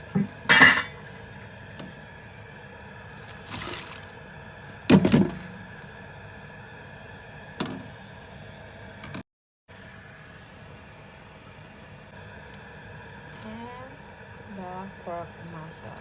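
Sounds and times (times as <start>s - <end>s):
steady low hum: 12.1s - 16.0s.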